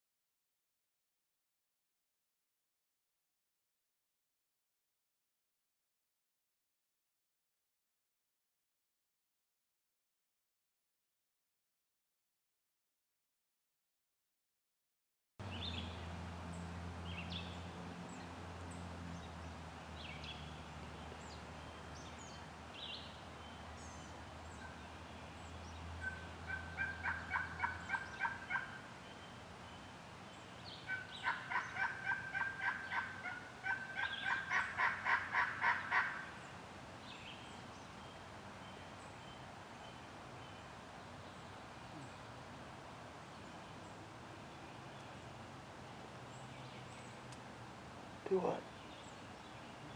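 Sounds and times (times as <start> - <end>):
songbirds chirping: 15.4 - 49.9
turkey yelping: 26.0 - 28.8, 30.9 - 36.2.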